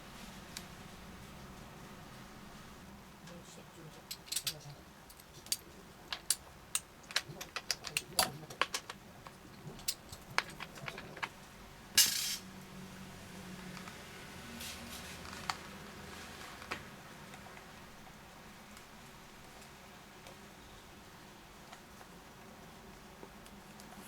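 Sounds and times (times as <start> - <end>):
metal parts clattering: 4.1 - 9.0, 12.0 - 12.4
metal parts clinking: 4.1 - 9.0, 12.0 - 12.4.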